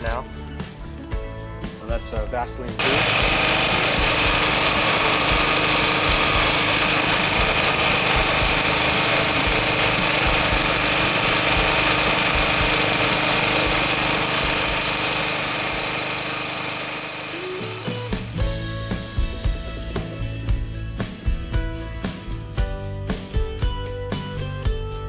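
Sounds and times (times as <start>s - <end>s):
drain jetter engine and pump drone: 2.8s - 18.5s.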